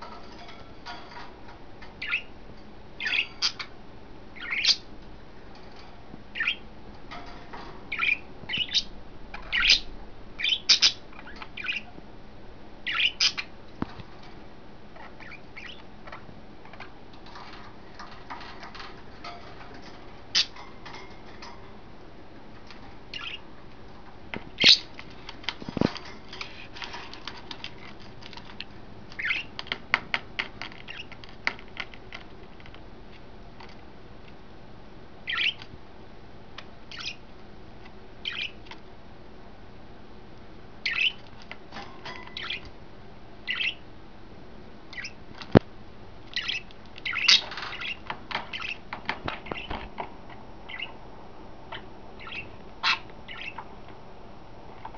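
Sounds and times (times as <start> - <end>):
budgerigars chirping and squawking: 2.0 - 2.3, 3.0 - 3.7, 4.4 - 4.9, 6.4 - 6.6, 7.2 - 11.9, 12.9 - 13.5, 15.0 - 21.5, 23.1 - 23.4, 24.6 - 25.0, 29.2 - 29.5, 30.9 - 31.2, 35.3 - 35.7, 36.9 - 37.2, 38.2 - 38.6, 40.8 - 41.2, 42.1 - 42.7, 43.5 - 43.8, 44.9 - 45.6, 46.3 - 49.9, 50.7 - 51.0, 51.7 - 53.7.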